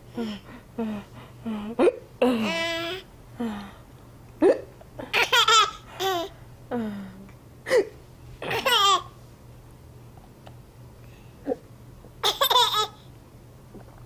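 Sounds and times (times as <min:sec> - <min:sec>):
baby laughing: 0:05.1 - 0:06.3, 0:08.5 - 0:09.1, 0:12.2 - 0:13.0.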